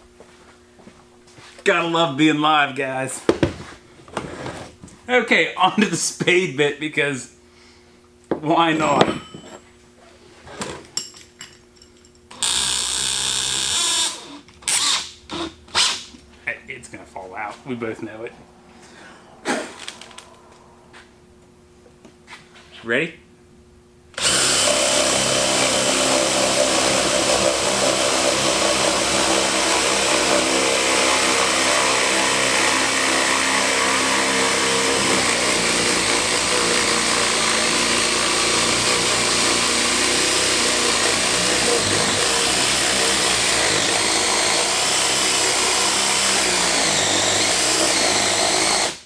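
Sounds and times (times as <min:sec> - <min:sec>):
hammer drill boring into wood: 0:12.3 - 0:16.1, 0:24.2 - 0:49.0.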